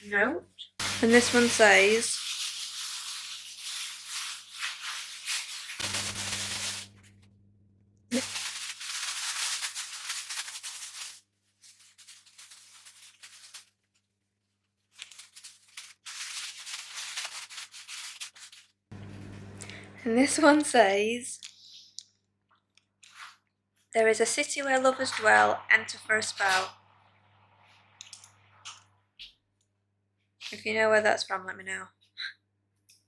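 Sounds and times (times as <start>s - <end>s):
foil wrapper crinkling: 0.8s - 7.2s, 8.1s - 18.8s.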